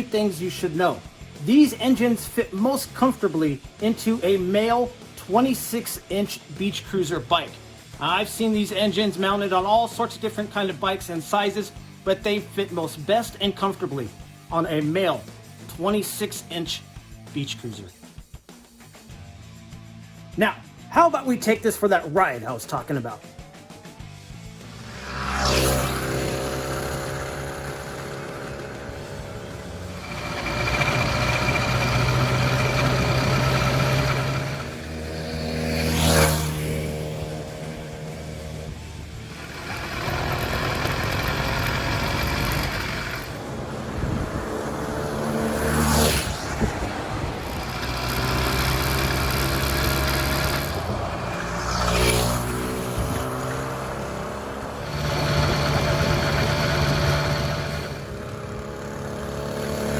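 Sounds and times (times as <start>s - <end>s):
two-stroke motorized bicycle engine: 24.7s - 46.1s, 47.5s - 59.9s.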